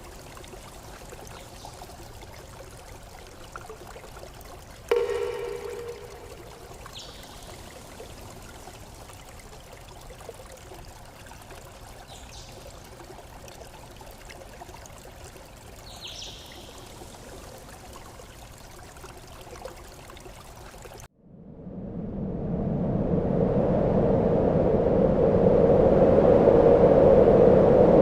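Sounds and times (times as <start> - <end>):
stream flowing: 0.0 - 21.1.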